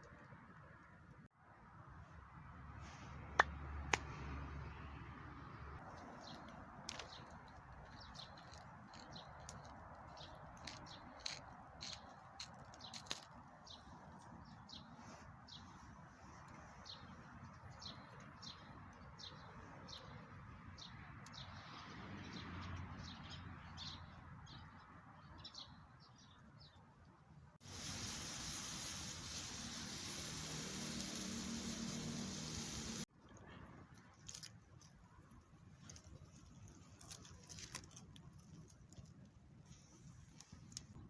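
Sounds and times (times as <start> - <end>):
small birds chirping: 5.8 - 26.8, 27.6 - 33.6
background hiss: 27.6 - 33.1.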